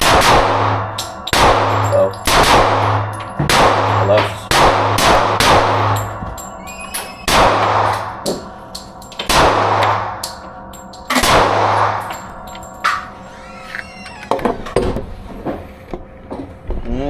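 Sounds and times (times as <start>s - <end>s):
handgun shots echoing indoors: 0.0s - 13.2s.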